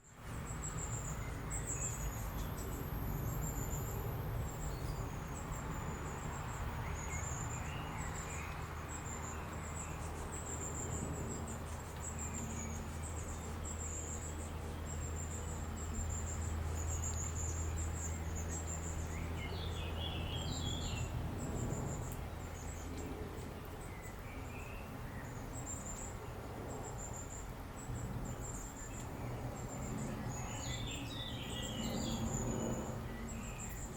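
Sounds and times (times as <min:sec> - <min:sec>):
insects chirring: 0:00.5 - 0:22.8.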